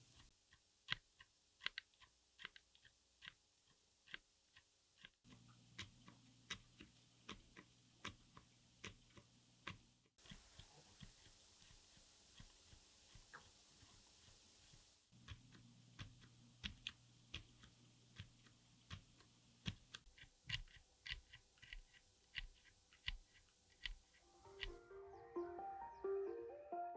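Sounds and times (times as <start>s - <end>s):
soft keyboard keystrokes: 5.3s - 10.0s, 15.2s - 24.8s
light quick keyboard taps: 15.2s - 20.7s
background music melody: 24.2s - 26.9s.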